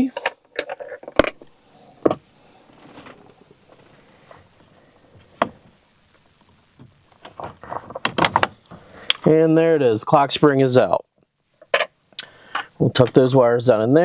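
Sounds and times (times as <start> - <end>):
faint handling noise: 0.0 - 9.3.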